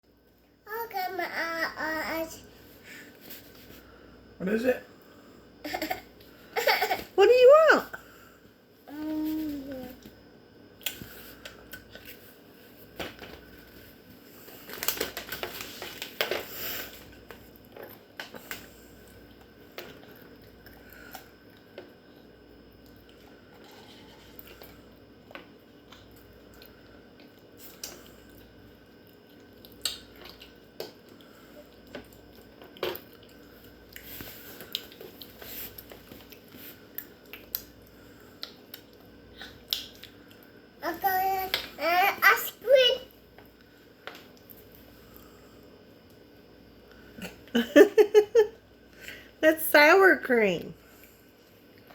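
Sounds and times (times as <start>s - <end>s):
child chewing crunchy chips: 10.8s - 40.7s.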